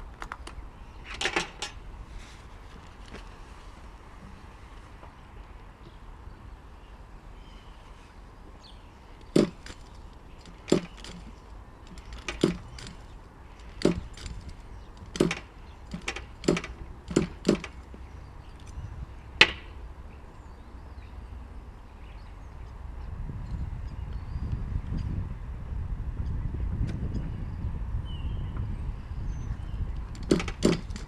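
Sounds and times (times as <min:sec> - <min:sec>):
sharp knocks and clicks: 0:09.3 - 0:18.0, 0:19.4 - 0:19.7, 0:30.0 - 0:31.0.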